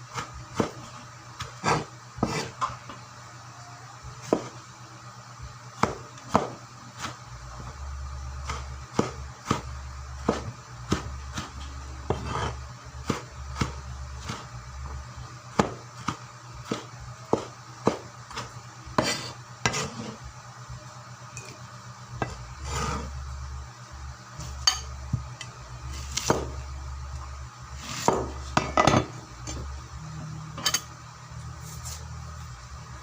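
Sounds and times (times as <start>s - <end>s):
knife chopping on cutting board: 0.1s - 2.7s, 4.2s - 4.6s, 5.8s - 7.2s, 8.4s - 14.5s, 15.5s - 20.2s, 26.0s - 26.6s, 27.8s - 29.0s.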